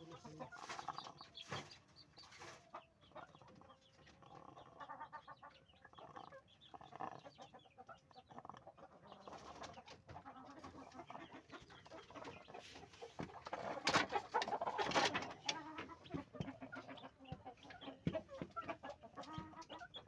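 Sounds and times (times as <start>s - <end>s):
chicken clucking: 0.0s - 20.0s
chicken snoring breath rattles: 3.6s - 4.8s, 5.9s - 10.8s, 11.4s - 17.1s.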